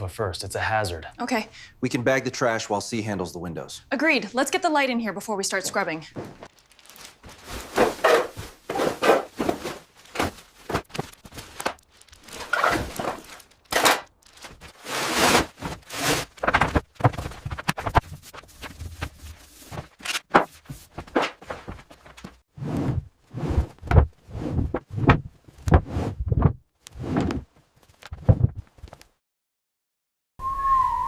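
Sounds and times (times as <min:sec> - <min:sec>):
scraping and rustling: 0:06.1 - 0:22.4
debris thuds and knocks: 0:06.2 - 0:22.3.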